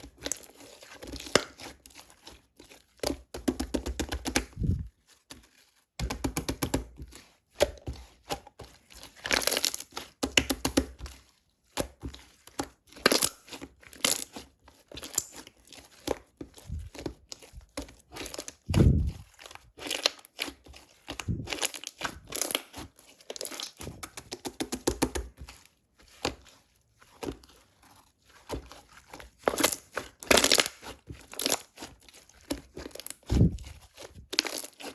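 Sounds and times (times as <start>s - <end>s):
material crinkling and tearing: 4.2s - 6.0s, 8.9s - 10.0s, 14.9s - 34.9s.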